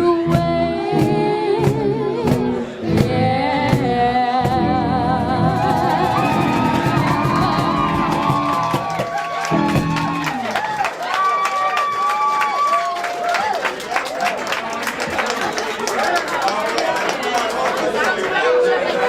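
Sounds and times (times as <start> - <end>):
drum strikes: 0.3 - 4.7, 5.4 - 10.4
rock band playing: 0.4 - 10.8.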